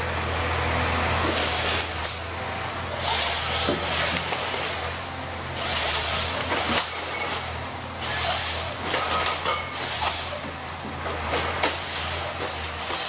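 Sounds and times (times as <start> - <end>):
heavy machine engine running: 0.0 - 13.0.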